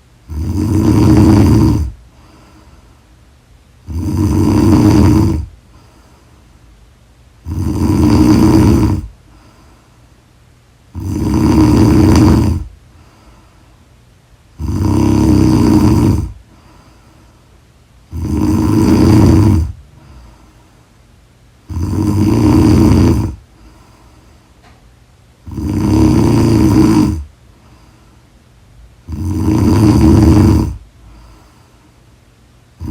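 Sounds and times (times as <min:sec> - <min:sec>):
person snoring loudly: 0:00.3 - 0:02.0, 0:03.8 - 0:05.6, 0:07.4 - 0:09.2, 0:10.9 - 0:12.7, 0:14.5 - 0:16.4, 0:18.1 - 0:20.2, 0:21.6 - 0:23.4, 0:25.4 - 0:27.3, 0:29.0 - 0:30.8.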